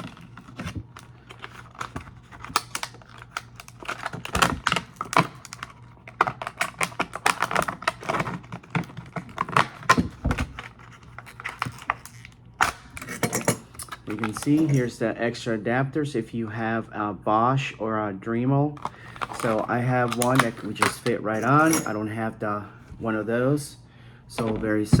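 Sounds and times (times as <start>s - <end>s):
metal blades clicking and rattling: 11.5s - 14.9s, 19.2s - 22.0s.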